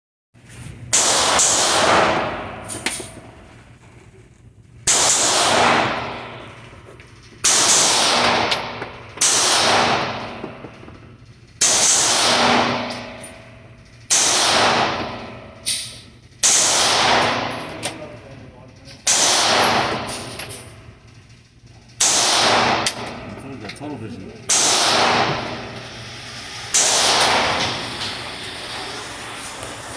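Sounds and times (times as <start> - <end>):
echoing gunshots: 0.9 - 3.5, 4.8 - 6.8, 7.4 - 11.0, 11.6 - 18.0, 19.0 - 20.6, 22.0 - 23.4, 24.5 - 26.0, 26.7 - 28.0.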